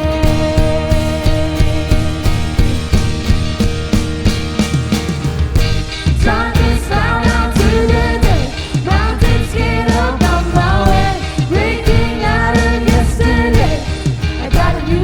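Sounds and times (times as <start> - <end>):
person singing: 0.0 - 2.8, 6.1 - 15.0
worship band with drums: 0.0 - 15.0.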